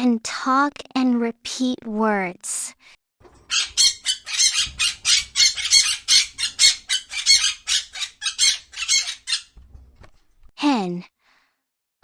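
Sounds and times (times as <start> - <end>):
parrot squawking: 3.4 - 9.6.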